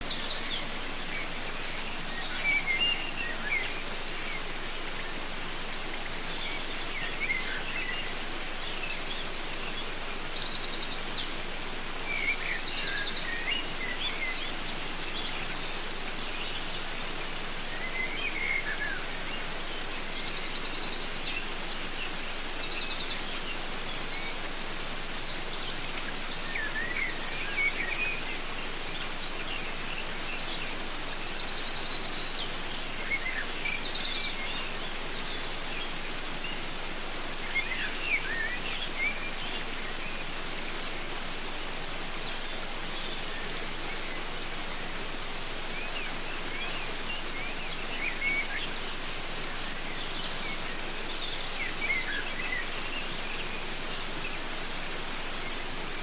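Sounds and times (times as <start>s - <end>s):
birds chirping and whistling: 0.0s - 4.6s
waterfall rushing: 0.0s - 56.0s.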